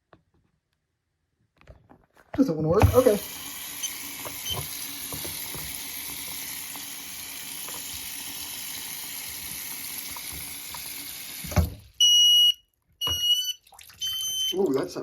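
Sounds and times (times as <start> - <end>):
tap water running into sink: 2.8 - 12.0, 13.0 - 15.0
short high alarm beep: 12.0 - 14.6.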